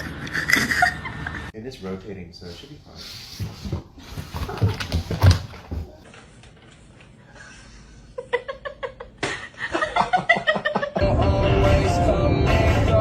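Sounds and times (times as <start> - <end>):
person laughing: 0.0 - 1.5
loud music: 11.0 - 13.0.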